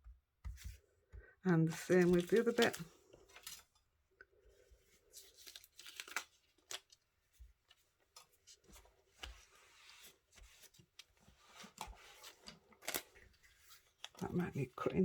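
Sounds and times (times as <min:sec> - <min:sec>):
plastic packaging crinkling: 0:01.7 - 0:03.7, 0:05.0 - 0:07.0, 0:11.6 - 0:14.9.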